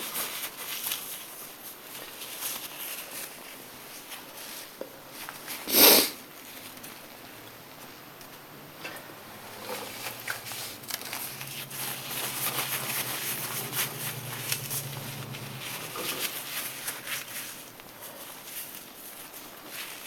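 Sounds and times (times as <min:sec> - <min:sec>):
small clicks and rustles: 0:00.0 - 0:05.6, 0:09.6 - 0:20.0
low steady hum: 0:06.4 - 0:20.0.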